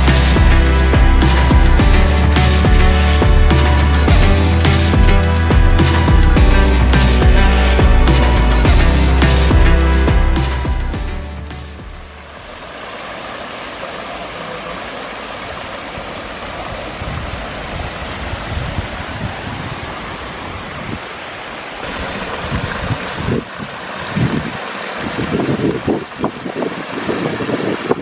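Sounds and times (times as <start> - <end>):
water rushing over rocks: 0.0 - 28.0
wind buffeting microphone: 16.7 - 21.0, 21.9 - 28.0.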